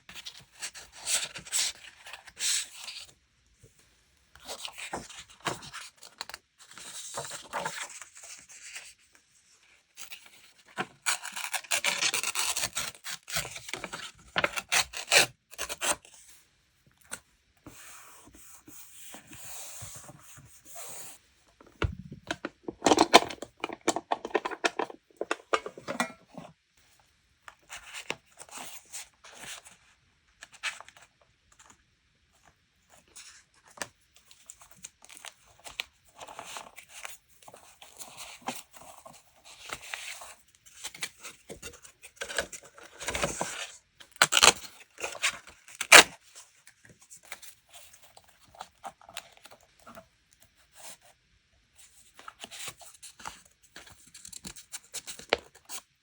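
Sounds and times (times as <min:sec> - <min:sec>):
paper rustling and crinkling: 0:17.1 - 0:26.5.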